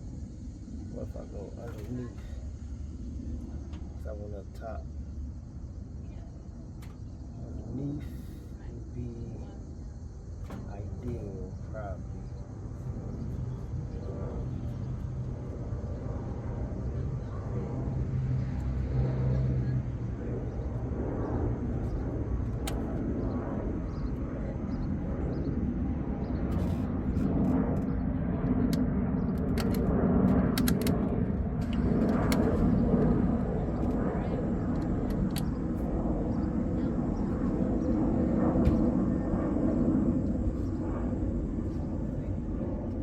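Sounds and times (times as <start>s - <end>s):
low outdoor rumble: 0.0s - 43.0s.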